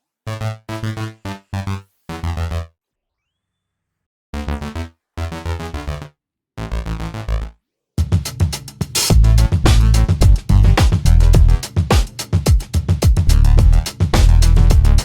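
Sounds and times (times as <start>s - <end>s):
stuttering synthesizer music: 9.1s - 11.8s, 13.3s - 15.0s.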